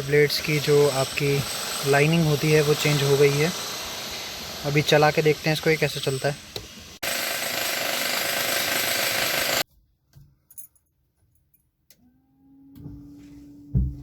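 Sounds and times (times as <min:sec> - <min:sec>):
loud steady hiss: 0:00.0 - 0:07.4.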